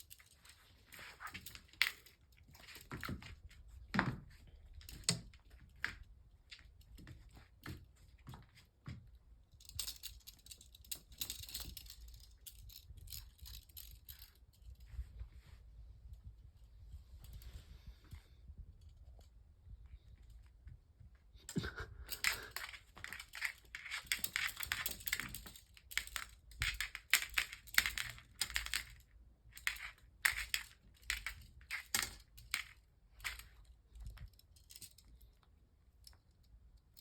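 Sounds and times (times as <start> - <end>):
kitten playing with rattling toy: 0.0 - 8.2, 9.5 - 15.6, 21.4 - 36.2.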